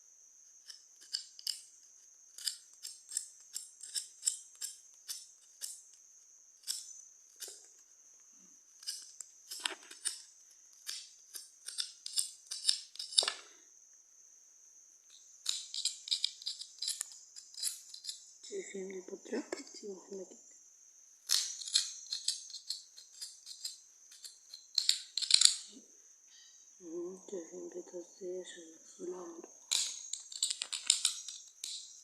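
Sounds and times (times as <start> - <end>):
faint high whine: 16.9 - 30.2.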